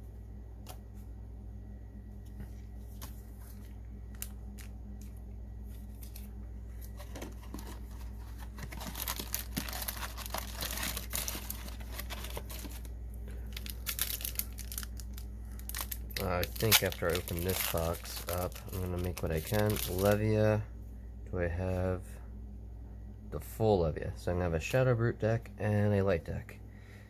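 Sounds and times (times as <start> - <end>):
foil wrapper tearing and crinkling: 7.0 - 20.2.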